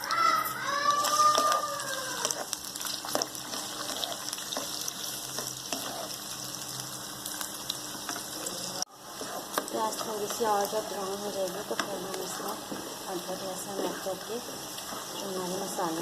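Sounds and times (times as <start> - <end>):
onions sizzling in hot oil: 0.0 - 16.0
spoon scraping a pan: 2.2 - 6.3, 9.1 - 15.8.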